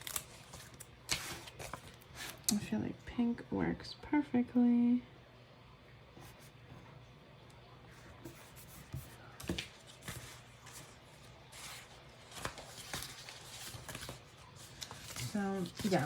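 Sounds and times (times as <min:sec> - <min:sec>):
paper rustling: 0:00.0 - 0:02.4, 0:08.1 - 0:16.0.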